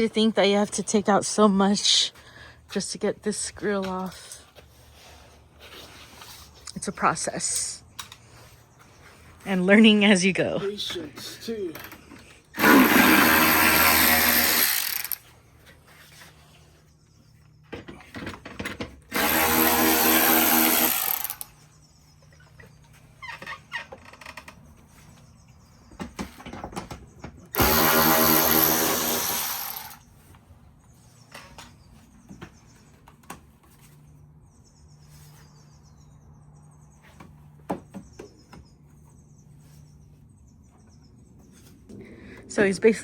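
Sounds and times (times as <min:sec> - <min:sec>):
power drill spinning: 0:12.5 - 0:15.3, 0:19.1 - 0:21.6, 0:27.5 - 0:30.0.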